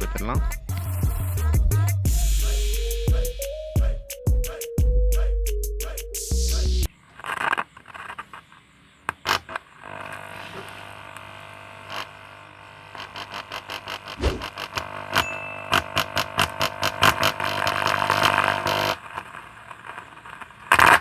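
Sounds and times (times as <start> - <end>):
music with heavy bass: 0.0 - 6.9.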